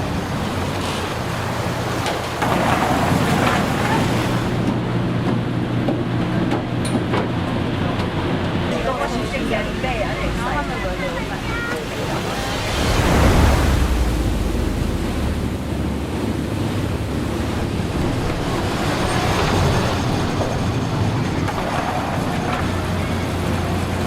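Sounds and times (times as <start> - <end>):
sea surf washing ashore: 0.0 - 24.0
wind buffeting microphone: 7.8 - 24.0.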